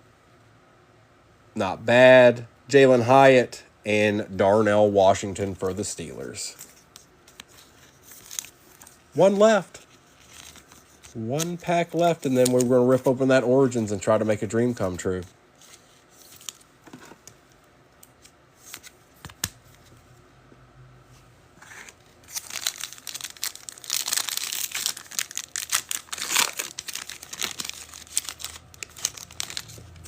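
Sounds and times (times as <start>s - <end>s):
foil wrapper tearing and crinkling: 22.2s - 30.0s.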